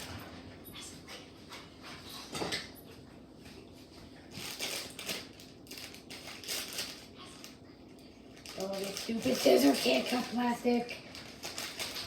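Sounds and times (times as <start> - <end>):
plastic packaging crinkling: 4.3 - 12.0.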